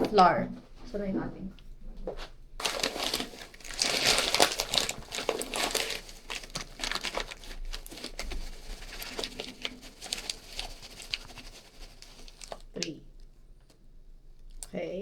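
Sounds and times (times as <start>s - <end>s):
flour bag crinkling: 2.6s - 13.0s.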